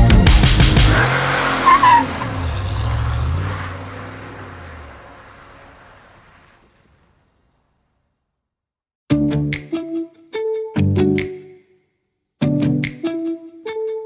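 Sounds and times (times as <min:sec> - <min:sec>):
car engine revving: 0:00.0 - 0:08.1
tyre screech: 0:00.2 - 0:06.5.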